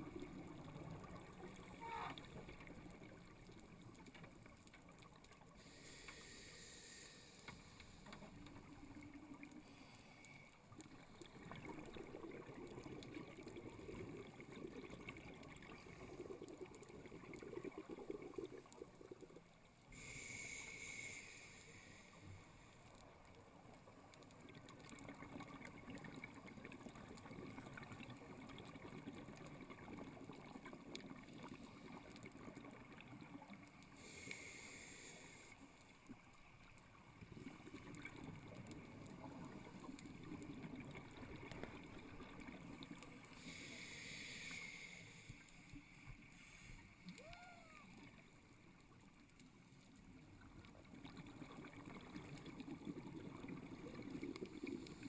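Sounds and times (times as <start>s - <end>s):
scuba regulator inhaling hiss: 5.6s - 8.1s, 9.6s - 10.5s, 19.9s - 22.7s, 33.9s - 35.8s, 43.3s - 47.2s
exhaled bubbles rumbling: 10.9s - 19.6s, 50.3s - 55.0s.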